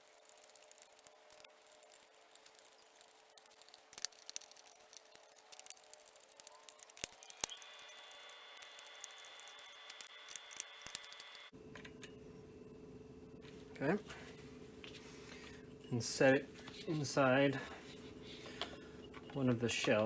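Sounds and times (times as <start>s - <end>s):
screwdriver clicks and scrapes: 0.0s - 11.5s
faint steady high tone: 6.4s - 13.3s.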